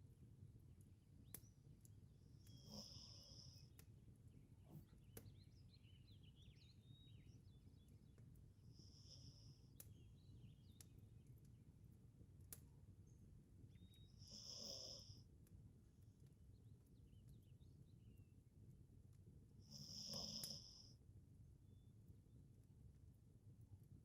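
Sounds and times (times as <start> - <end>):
low steady hum: 0.0 - 24.0
faint squeaky chirps: 2.2 - 3.8, 13.0 - 15.2.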